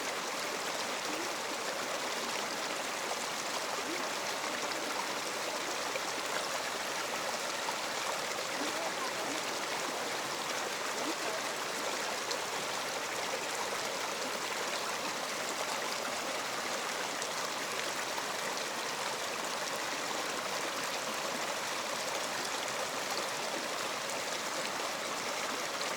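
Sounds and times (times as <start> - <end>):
stream of water flowing: 0.0 - 25.9.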